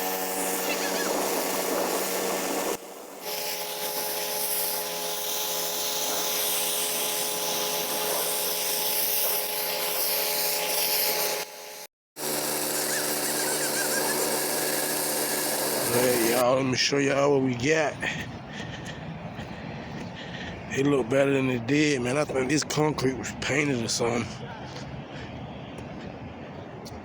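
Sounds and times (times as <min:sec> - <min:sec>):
high-pressure water spray hiss: 0:00.0 - 0:11.5, 0:12.2 - 0:16.4
pressure washer pump droning: 0:00.0 - 0:16.4.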